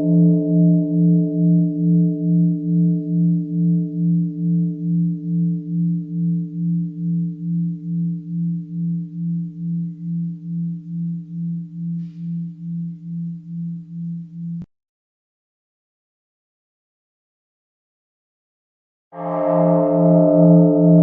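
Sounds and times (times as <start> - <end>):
mindfulness bell ringing: 19.2 - 21.0.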